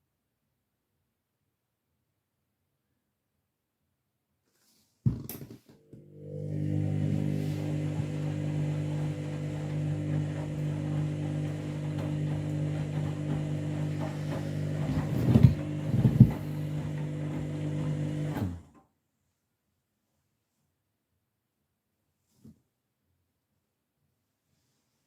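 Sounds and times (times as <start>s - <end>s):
washing machine humming: 5.9s - 18.7s.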